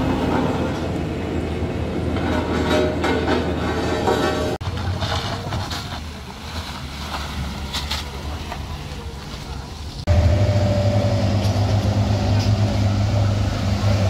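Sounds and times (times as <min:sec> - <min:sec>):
road and wind noise: 0:00.0 - 0:14.0
heavy vehicle engine running: 0:07.4 - 0:14.0
loud engine drone: 0:10.1 - 0:14.0.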